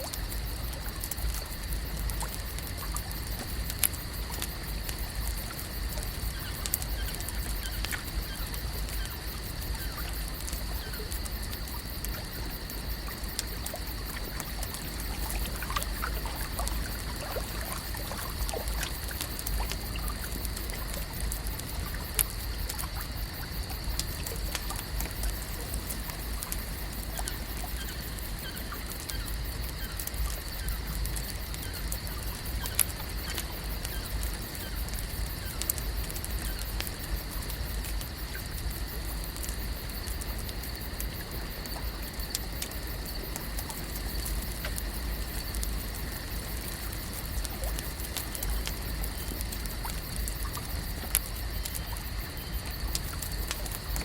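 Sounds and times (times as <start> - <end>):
faint ticks: 0.0 - 54.0
water trickling and lapping: 0.0 - 54.0.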